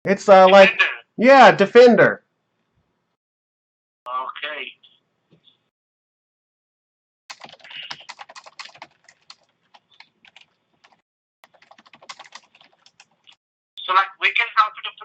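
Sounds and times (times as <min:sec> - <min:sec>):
typing on computer keyboard: 0:07.3 - 0:13.4.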